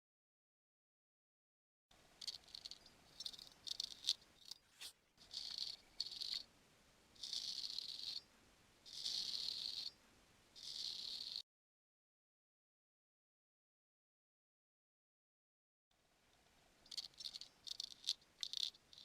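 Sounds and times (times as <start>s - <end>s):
ear grooming scraping: 2.2s - 6.5s, 7.2s - 8.2s, 8.9s - 9.9s, 16.9s - 19.0s.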